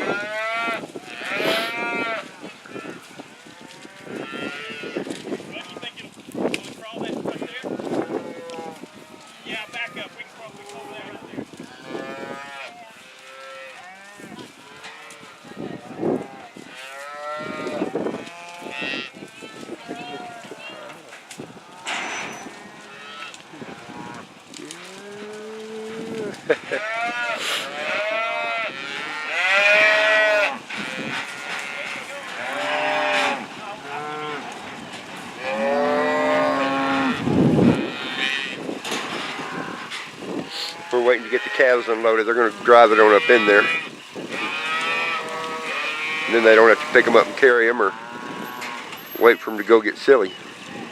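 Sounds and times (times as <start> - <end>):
cattle mooing and bawling: 0.0 - 5.0, 21.8 - 34.6, 35.4 - 49.2.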